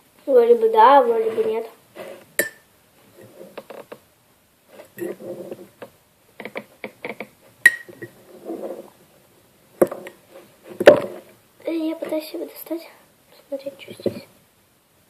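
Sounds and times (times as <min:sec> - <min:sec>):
fork scraping a mug: 0:04.8 - 0:05.7
fork clinking against mug: 0:07.7 - 0:08.1.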